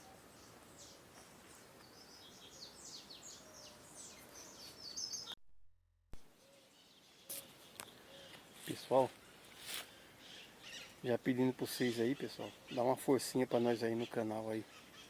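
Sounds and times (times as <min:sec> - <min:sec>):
small songbirds chirping: 0:00.0 - 0:05.4, 0:06.3 - 0:15.0.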